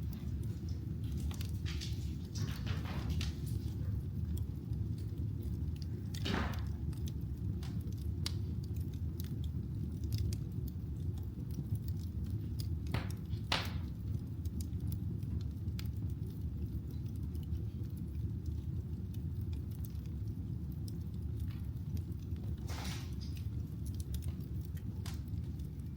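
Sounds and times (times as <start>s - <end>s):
fire crackling and popping: 0.0s - 25.9s
wood fire rumbling: 0.0s - 25.9s.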